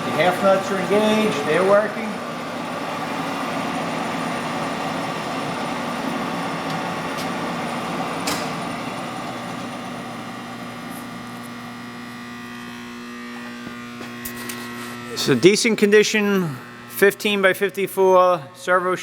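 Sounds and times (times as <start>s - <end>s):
lathe gearing whirring: 0.0s - 18.3s
lathe sharp click: 6.0s - 8.9s.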